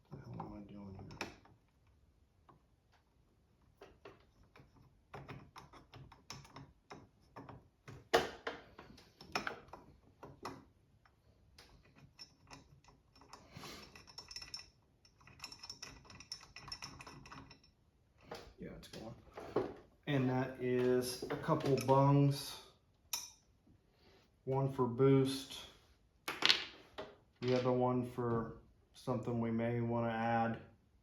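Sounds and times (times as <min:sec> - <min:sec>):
metal parts and tools clattering: 0:11.6 - 0:17.8, 0:20.8 - 0:22.1, 0:27.4 - 0:27.8.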